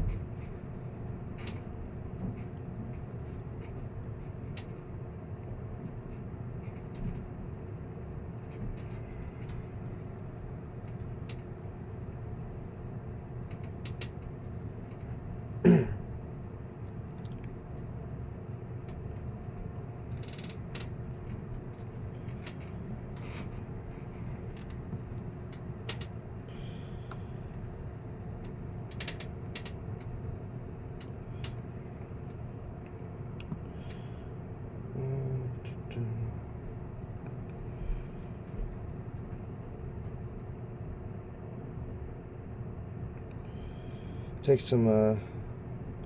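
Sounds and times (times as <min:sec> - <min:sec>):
small clicks and taps of parts: 0:00.0 - 0:04.9, 0:13.4 - 0:15.2, 0:24.2 - 0:26.3, 0:28.4 - 0:30.1
low background hum: 0:00.0 - 0:46.0
person clearing throat: 0:15.6 - 0:16.0.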